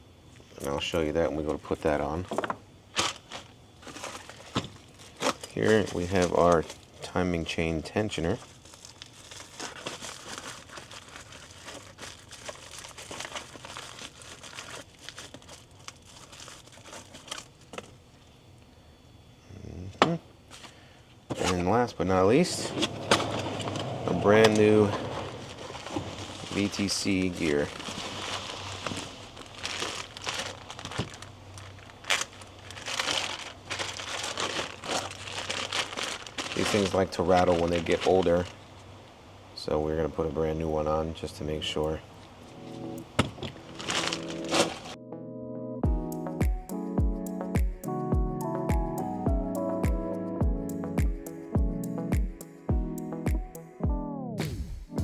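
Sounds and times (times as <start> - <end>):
plastic packaging crinkling: 1.6 - 18.2, 22.6 - 39.5, 40.3 - 45.0.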